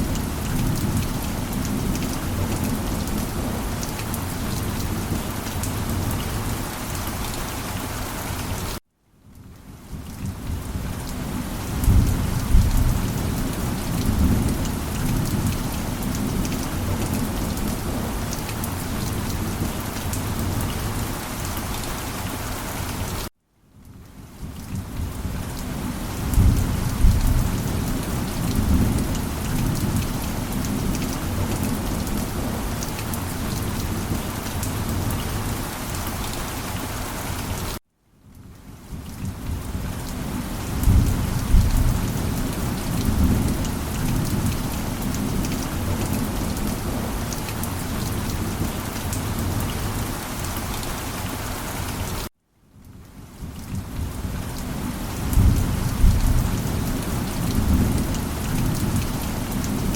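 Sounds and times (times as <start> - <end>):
heavy rain: 0.0 - 37.8, 38.4 - 59.9
thunder rumbling: 11.7 - 18.3, 26.2 - 32.8, 40.7 - 47.3, 55.2 - 59.9.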